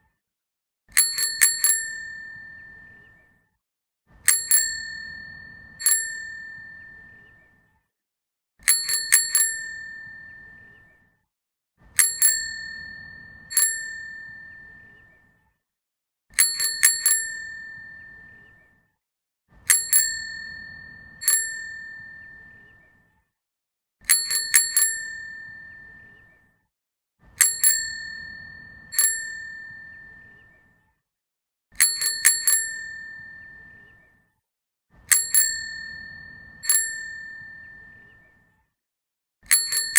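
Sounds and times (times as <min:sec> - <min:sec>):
bicycle bell dings: 0:00.9 - 0:03.1, 0:04.2 - 0:07.2, 0:08.6 - 0:10.8, 0:12.0 - 0:15.0, 0:16.4 - 0:18.4, 0:19.7 - 0:22.7, 0:24.0 - 0:26.2, 0:27.4 - 0:30.4, 0:31.8 - 0:33.9, 0:35.1 - 0:38.0, 0:39.5 - 0:39.9.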